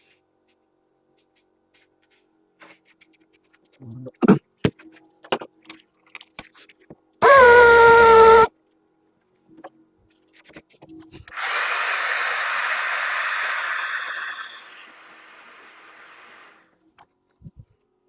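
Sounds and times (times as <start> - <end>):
hot-air gun blowing: 7.2 - 8.5, 11.4 - 16.6.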